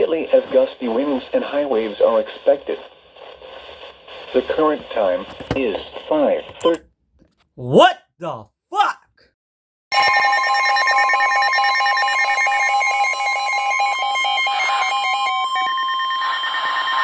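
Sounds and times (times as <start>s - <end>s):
steady electronic alarm tone: 9.9s - 17.0s.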